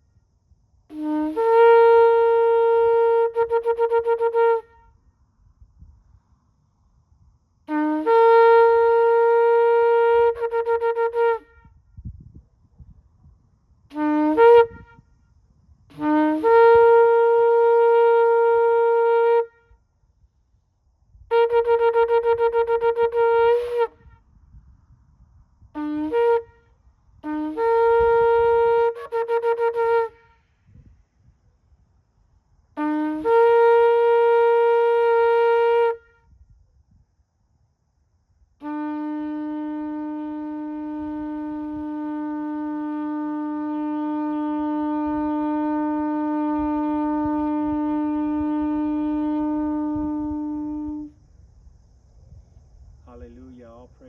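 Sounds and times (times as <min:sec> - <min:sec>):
ram's horn blasts: 0:00.9 - 0:05.0, 0:07.7 - 0:11.8, 0:13.9 - 0:15.1, 0:15.9 - 0:19.8, 0:21.3 - 0:24.2, 0:25.8 - 0:30.5, 0:32.8 - 0:36.3, 0:38.6 - 0:51.1.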